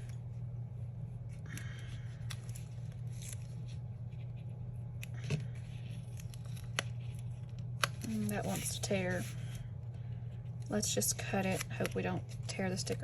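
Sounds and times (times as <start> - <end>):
low electrical hum: 0.0 - 13.0
paper stickers rustling: 1.6 - 4.6, 5.4 - 9.5.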